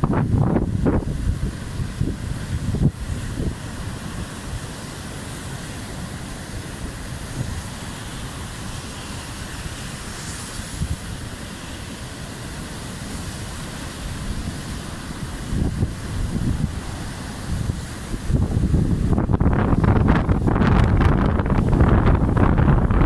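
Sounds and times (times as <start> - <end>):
wind buffeting microphone: 0.0 - 4.8, 13.2 - 23.0.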